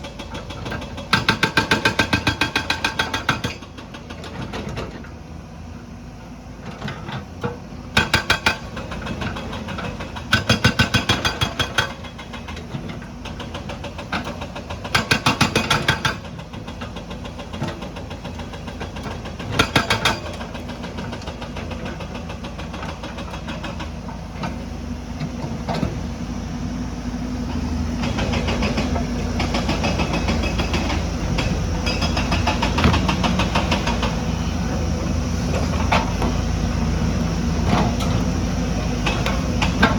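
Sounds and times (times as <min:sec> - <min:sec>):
diesel engine running: 0:20.3 - 0:39.9
hydraulic breaker hammering: 0:28.0 - 0:34.4.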